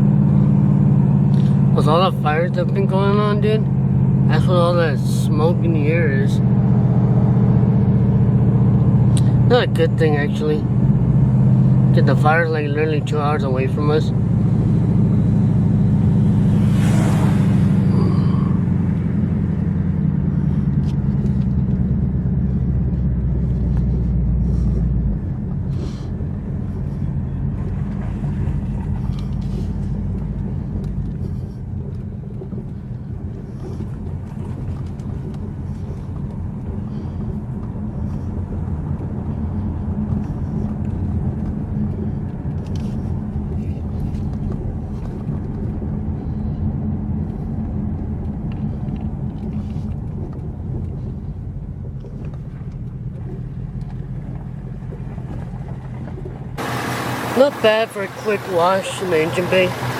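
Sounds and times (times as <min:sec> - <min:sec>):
car engine low drone: 0:00.0 - 0:59.9
brief whoosh: 0:16.4 - 0:18.6.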